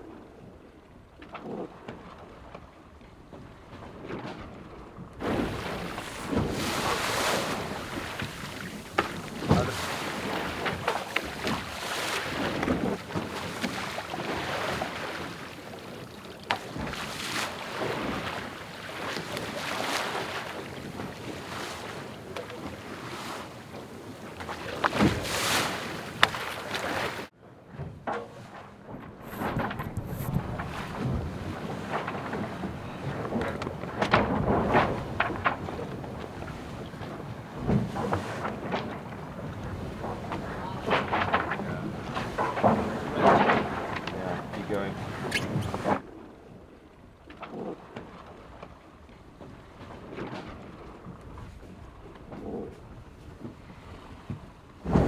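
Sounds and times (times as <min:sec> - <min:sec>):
boat knocks and bangs: 0:05.2 - 0:27.3, 0:29.3 - 0:46.0
water rushing past hull: 0:05.2 - 0:27.3, 0:29.2 - 0:46.0
wind buffeting microphone: 0:05.2 - 0:27.3, 0:29.2 - 0:46.0.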